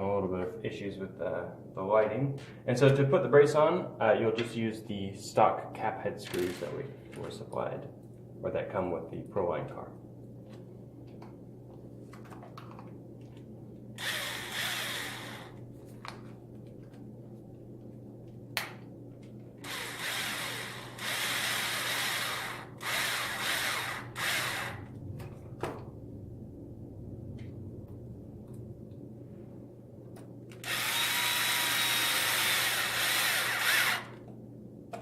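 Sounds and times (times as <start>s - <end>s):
electric screwdriver running: 14.0s - 15.6s, 19.6s - 24.9s, 30.6s - 34.2s.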